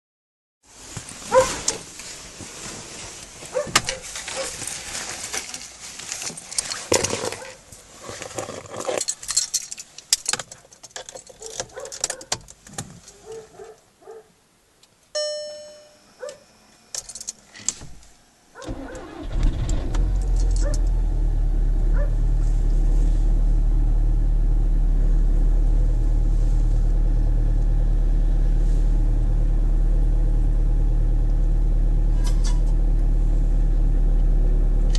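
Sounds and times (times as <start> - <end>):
keys jangling: 8.8 - 12.3, 17.0 - 17.4, 20.3 - 20.8
short beep: 15.1 - 16.6
diesel engine starting and idling: 18.6 - 34.9.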